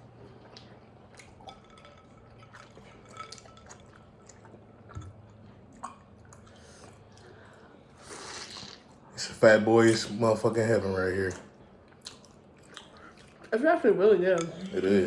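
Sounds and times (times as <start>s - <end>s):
wet chewing of soaked cookie: 0.0s - 9.1s, 11.3s - 13.6s.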